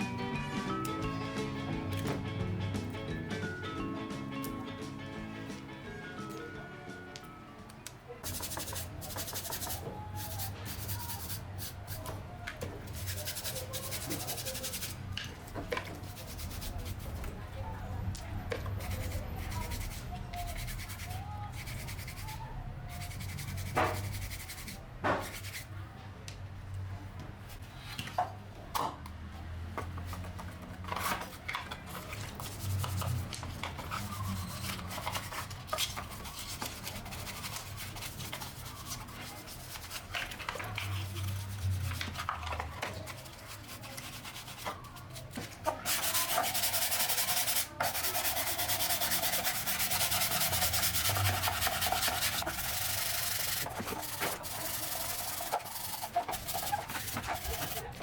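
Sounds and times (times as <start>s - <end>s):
sanding: 8.3s - 12.0s, 12.9s - 15.0s, 16.0s - 17.2s, 18.8s - 25.6s, 34.0s - 42.3s, 43.1s - 44.8s, 45.9s - 58.0s.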